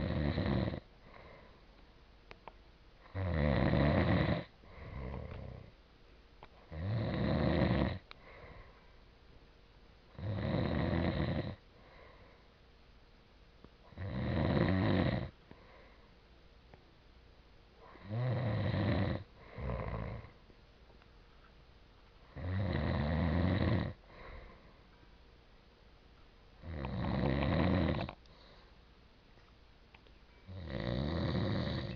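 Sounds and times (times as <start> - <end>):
man snoring: 0.0 - 0.8, 3.1 - 5.7, 6.7 - 8.0, 10.2 - 11.6, 14.0 - 15.3, 17.9 - 20.3, 22.3 - 24.0, 26.6 - 28.2, 30.5 - 31.9.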